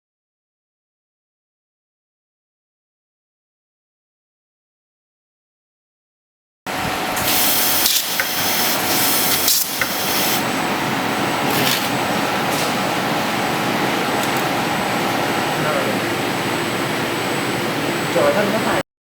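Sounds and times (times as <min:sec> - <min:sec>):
welding machine with high whine: 0:06.7 - 0:18.8
hiss bursts: 0:07.2 - 0:10.4.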